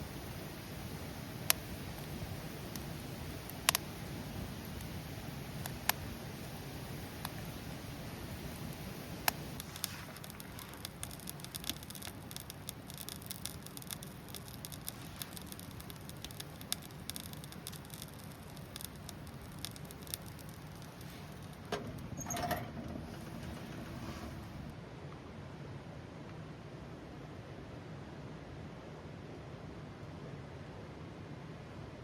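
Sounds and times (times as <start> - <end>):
campfire crackling: 0.0 - 24.8.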